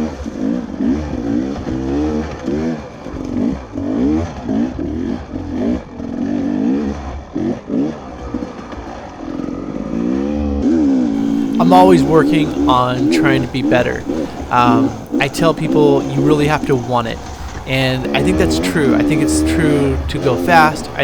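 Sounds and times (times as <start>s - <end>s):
dirt bike engine revving: 11.2s - 21.0s.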